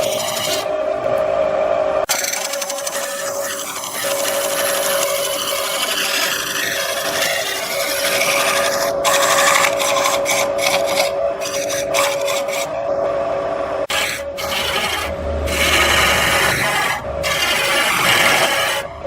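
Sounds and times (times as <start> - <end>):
tool scraping wood on lathe: 0.0 - 0.7, 2.1 - 12.8, 13.9 - 18.9
lathe humming: 0.0 - 19.0.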